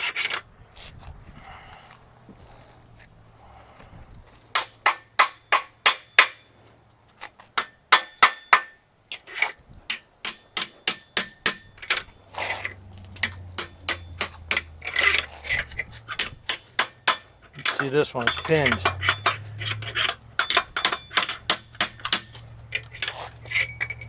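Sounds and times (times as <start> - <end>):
metal-on-metal knocks: 9.9 - 12.1, 13.2 - 24.0.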